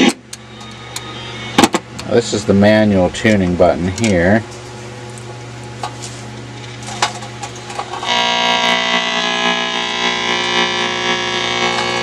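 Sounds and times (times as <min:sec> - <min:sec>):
radio speaker humming: 0:00.0 - 0:04.5, 0:06.6 - 0:12.0
tuning control clicks: 0:07.9 - 0:12.0
loud steady whistle from speaker: 0:08.1 - 0:12.0.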